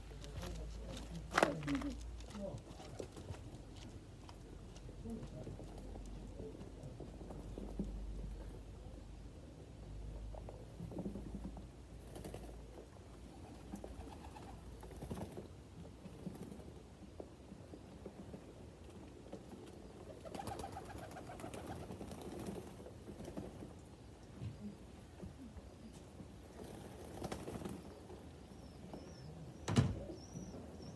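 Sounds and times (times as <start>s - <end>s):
pigeons cooing: 13.2s - 15.2s.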